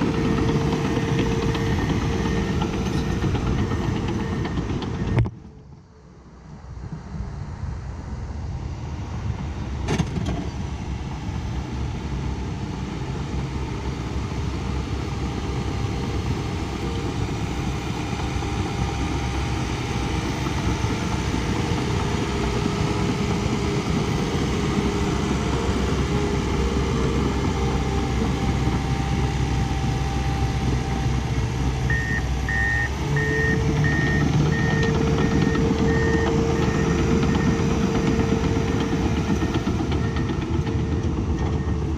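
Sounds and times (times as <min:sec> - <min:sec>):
diesel machine engine running: 0:00.0 - 0:06.3, 0:08.4 - 0:41.9
backup alarm beeping: 0:31.9 - 0:37.7.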